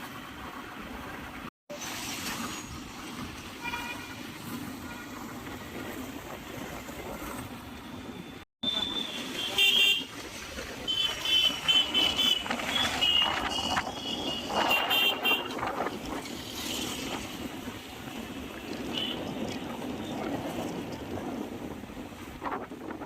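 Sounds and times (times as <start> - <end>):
road traffic noise: 0.0 - 23.0
wind buffeting microphone: 12.4 - 23.0.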